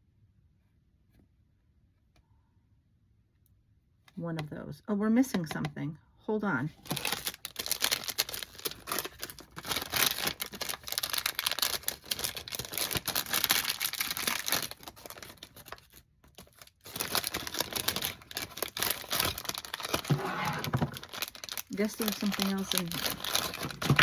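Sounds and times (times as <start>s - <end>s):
packaging crinkling and rustling: 6.7s - 24.0s.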